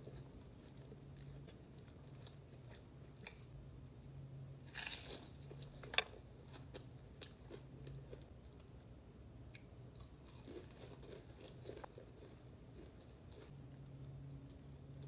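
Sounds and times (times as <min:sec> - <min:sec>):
faint low hum: 0:00.0 - 0:15.0
chewing and biting: 0:09.6 - 0:13.6.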